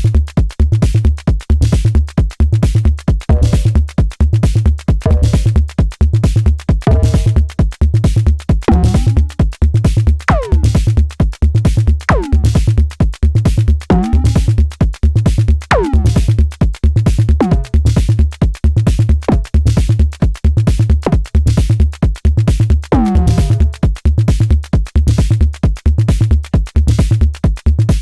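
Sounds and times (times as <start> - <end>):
fast hi-hats: 0.0 - 28.0
kick drum: 0.0 - 28.0
drum tone falling in pitch: 6.9 - 7.4, 8.7 - 9.3, 10.3 - 10.8, 12.1 - 12.6, 13.9 - 14.5, 15.7 - 16.3, 22.9 - 23.8.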